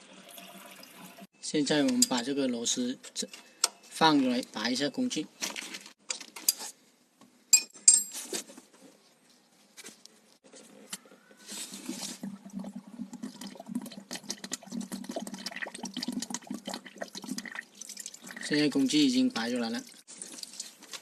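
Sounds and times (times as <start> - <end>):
metallic clinks: 7.5 - 8.2
coolant gurgling and trickling: 11.7 - 21.0.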